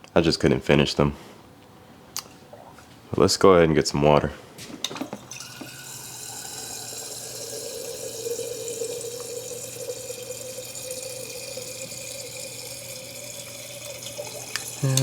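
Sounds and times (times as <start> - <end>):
tap running into glass jar: 4.9 - 6.0, 14.0 - 15.0.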